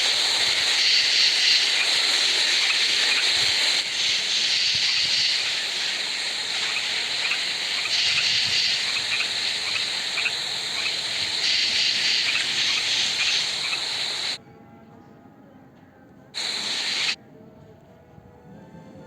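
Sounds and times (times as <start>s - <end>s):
frogs chirping: 0.0s - 14.4s, 16.4s - 17.2s
steady hiss: 0.0s - 14.4s, 16.4s - 17.2s.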